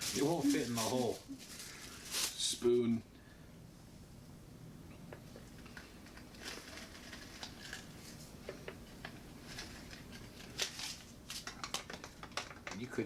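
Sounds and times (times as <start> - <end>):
spoon stirring in plastic bottle: 5.5 - 10.6.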